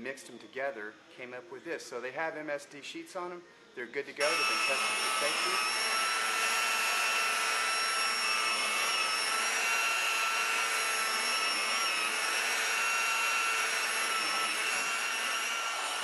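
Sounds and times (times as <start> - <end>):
small electric motor whining: 4.2 - 16.0.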